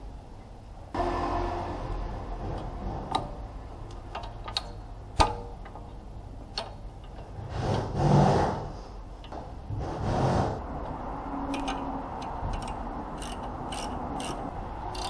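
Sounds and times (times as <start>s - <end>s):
rubbing scraping noise: 7.4s - 9.0s, 9.7s - 10.6s.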